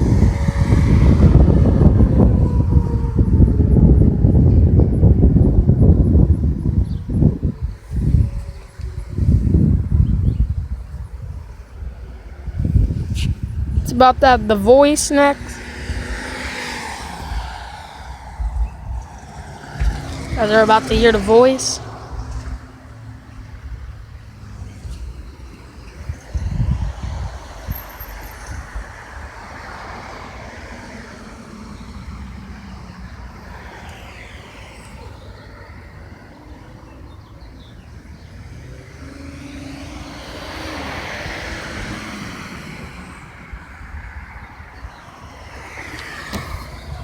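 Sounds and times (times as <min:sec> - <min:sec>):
vehicle passing: 0:00.0 - 0:09.9, 0:11.0 - 0:47.0
road traffic: 0:00.0 - 0:47.0.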